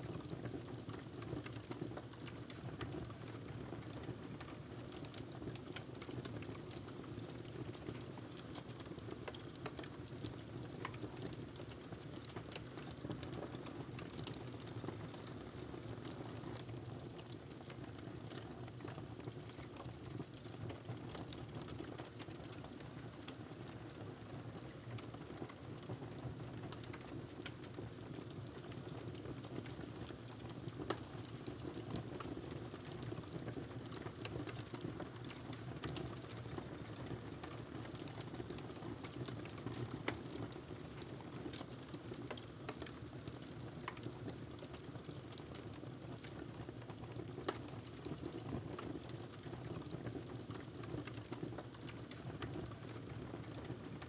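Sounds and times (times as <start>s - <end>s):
wood fire crackling: 26.7s - 49.6s.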